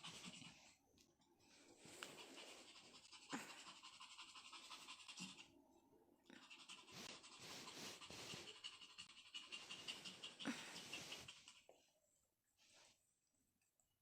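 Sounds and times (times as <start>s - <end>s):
dog panting quickly: 0.0s - 0.8s, 1.9s - 5.5s, 6.4s - 11.7s.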